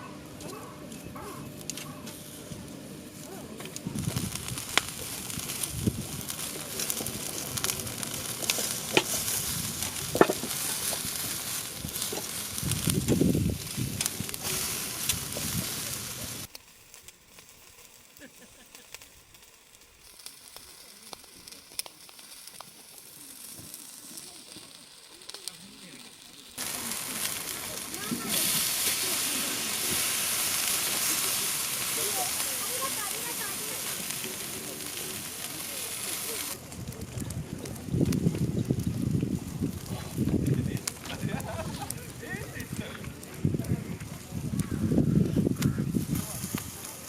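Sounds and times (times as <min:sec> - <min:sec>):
food sizzling in a pan: 0:00.6 - 0:37.3, 0:37.9 - 0:47.0.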